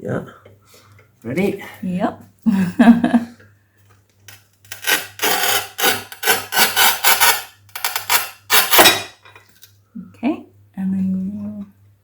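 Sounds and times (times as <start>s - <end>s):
tile cutter wheel scraping tile: 4.7s - 9.1s.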